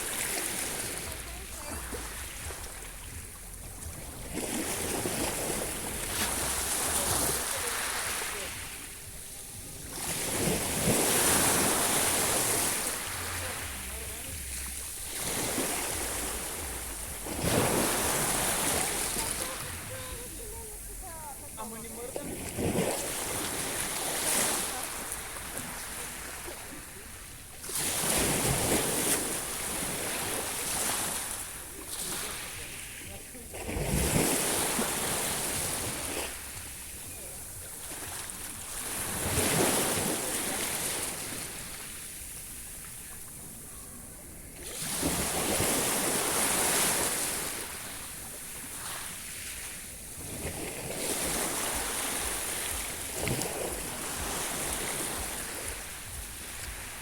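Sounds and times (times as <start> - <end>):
sea waves washing onto shore: 0.0 - 57.0.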